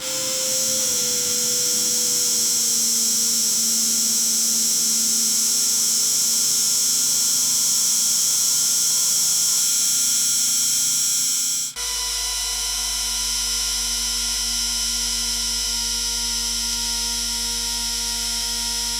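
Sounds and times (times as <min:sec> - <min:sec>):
auger motor whining: 0:00.0 - 0:04.9.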